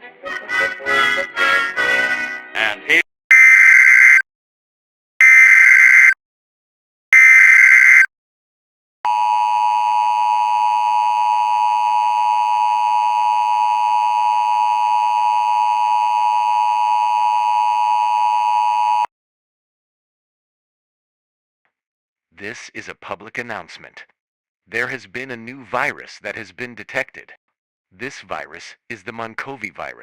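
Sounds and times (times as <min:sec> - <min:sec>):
steady two-tone alert signal: 0:03.3 - 0:04.2, 0:05.2 - 0:06.2, 0:07.2 - 0:08.1, 0:09.1 - 0:19.1.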